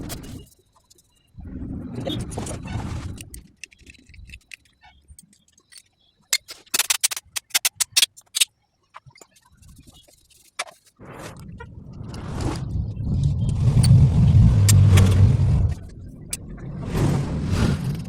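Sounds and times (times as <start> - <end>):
sharp clicks and rattles: 3.0 - 10.9, 13.2 - 16.5.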